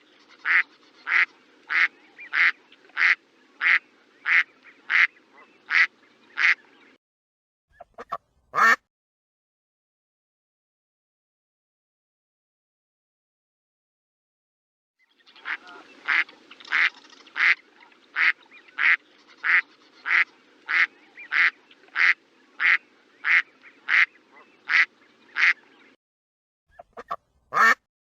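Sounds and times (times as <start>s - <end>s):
duck quacking: 0.2s - 6.6s, 7.8s - 8.8s, 15.4s - 17.6s, 18.2s - 25.6s, 26.7s - 27.9s.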